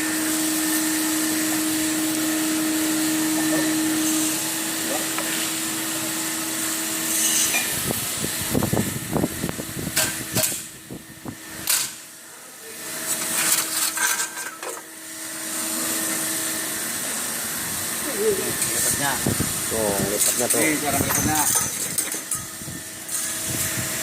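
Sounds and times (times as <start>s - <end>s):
mechanical hum with held tone: 0.0s - 24.0s.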